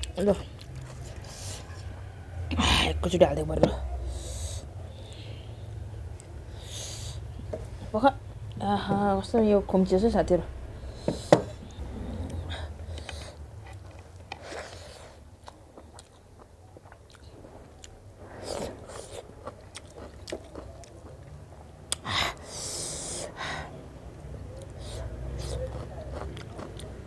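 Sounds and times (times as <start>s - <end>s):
chewing and biting food: 0.0s - 2.2s, 11.6s - 22.1s, 24.2s - 27.0s.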